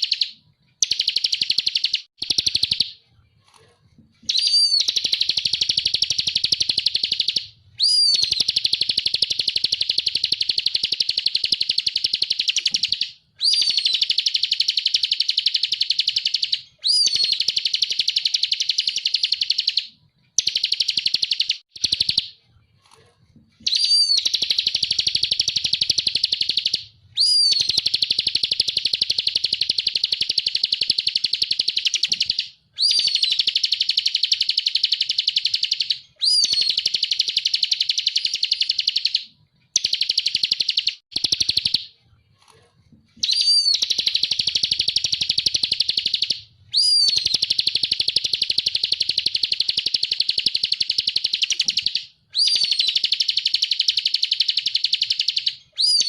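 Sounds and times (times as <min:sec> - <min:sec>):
bird singing buzzy trills: 0:04.3 - 0:19.8, 0:23.6 - 0:39.2, 0:43.2 - 0:50.5, 0:51.1 - 0:55.1, 0:55.8 - 0:56.0.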